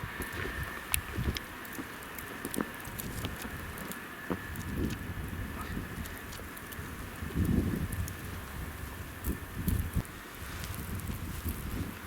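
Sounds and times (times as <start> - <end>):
blizzard wind gusting on microphone: 0.0 - 12.0
faint clicks and ticks: 0.2 - 8.3.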